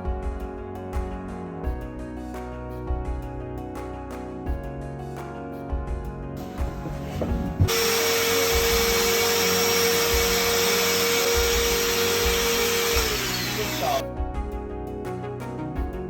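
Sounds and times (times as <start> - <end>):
electric motor whining: 6.7 - 14.0.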